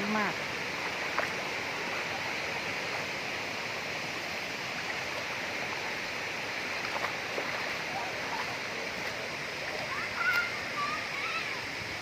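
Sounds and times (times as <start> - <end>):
waterfall rushing: 0.0 - 12.0.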